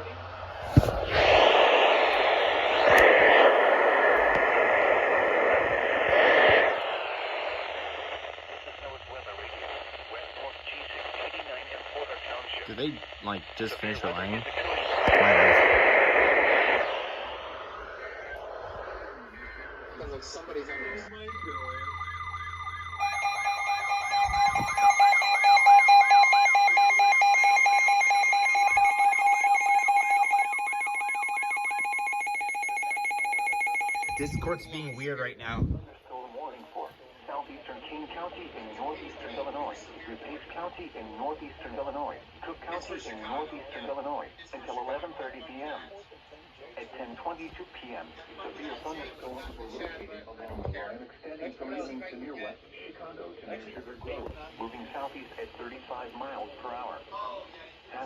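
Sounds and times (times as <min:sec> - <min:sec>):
radio static hiss: 0:00.0 - 0:58.0
faint steady tone: 0:15.9 - 0:35.4
fast pulsing electronic beep: 0:20.8 - 0:35.2.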